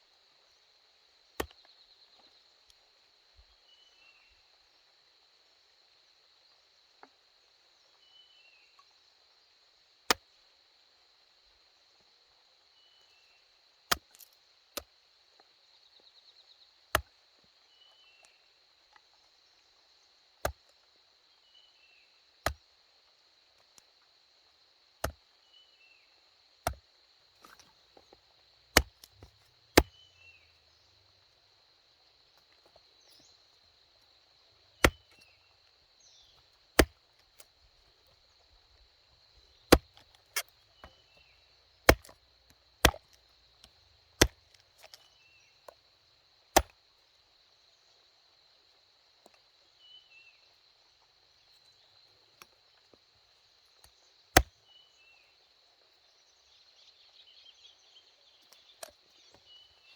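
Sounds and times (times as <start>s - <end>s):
sharp chopping strikes: 28.8s - 30.0s, 34.8s - 35.2s, 39.7s - 40.5s, 41.9s - 42.2s, 42.8s - 43.1s, 44.2s - 45.0s
bird chirps: 29.8s - 31.0s.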